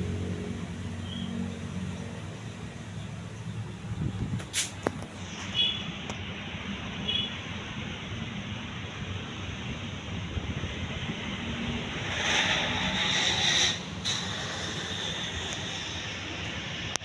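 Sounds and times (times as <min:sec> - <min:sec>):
loud hiss: 0:04.5 - 0:04.8, 0:11.8 - 0:16.8.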